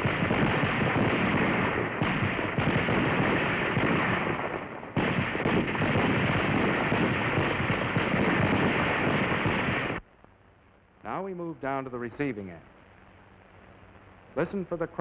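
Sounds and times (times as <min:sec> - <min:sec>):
rifles firing: 0:00.0 - 0:10.0.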